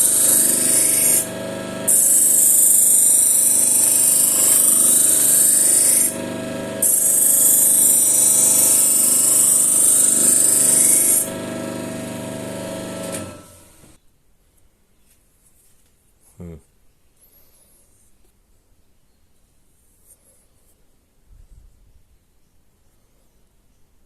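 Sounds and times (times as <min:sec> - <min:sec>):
steel blade hissing on honing wheel: 0:00.0 - 0:13.9
grinder motor hum: 0:00.0 - 0:14.0.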